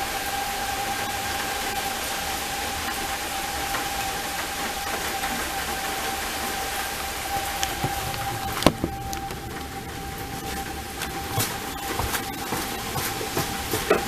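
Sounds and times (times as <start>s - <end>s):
distant tornado siren: 0.0s - 14.0s
steady rain hiss: 0.0s - 14.0s.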